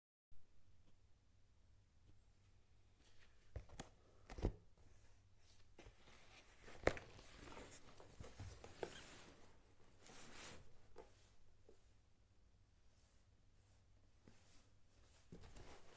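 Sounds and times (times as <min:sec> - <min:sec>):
box rustling and scraping: 0:05.9 - 0:11.3.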